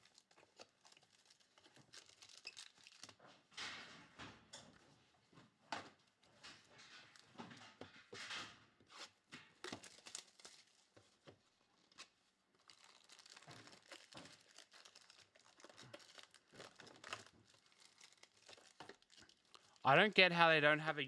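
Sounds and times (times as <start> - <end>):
packaging crinkling and tearing: 0.0 - 3.2, 9.6 - 19.8.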